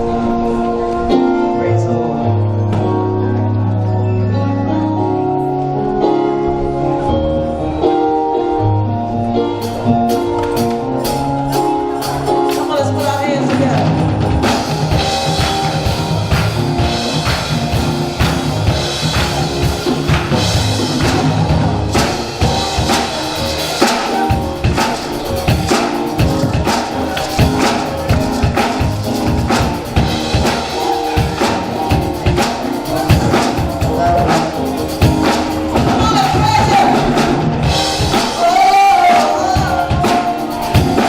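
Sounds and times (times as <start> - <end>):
church band playing worship music: 0.0 - 41.0
drum kit beat: 9.6 - 41.0.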